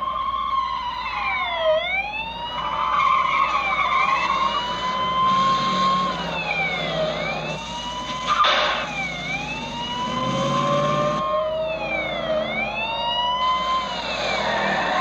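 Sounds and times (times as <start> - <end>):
police siren wailing: 0.0 - 15.0
car engine running: 3.5 - 15.0.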